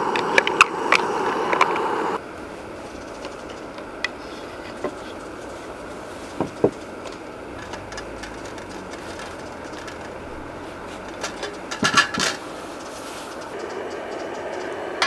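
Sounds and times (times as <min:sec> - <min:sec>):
steady background hiss: 0:00.0 - 0:15.0
kitchenware clattering: 0:06.2 - 0:13.6.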